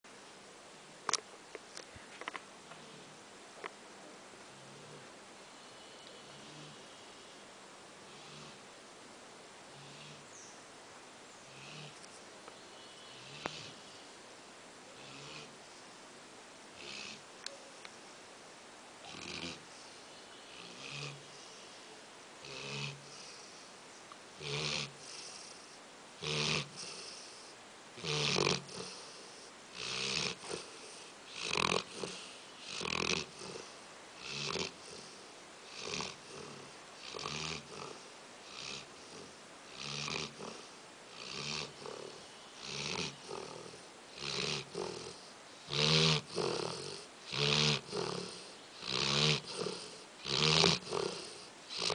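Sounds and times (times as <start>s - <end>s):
person snoring: 24.4s - 25.6s, 26.2s - 27.4s, 28.0s - 51.9s.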